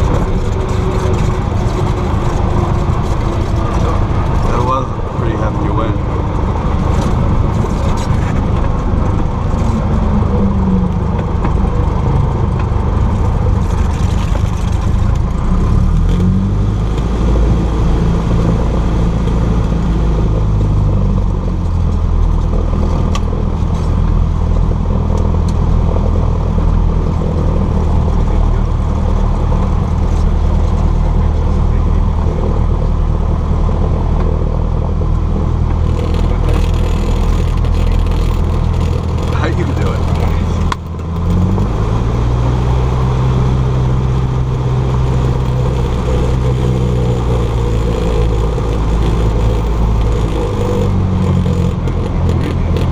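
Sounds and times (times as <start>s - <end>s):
airplane piston engine in cabin: 33.7s - 52.9s.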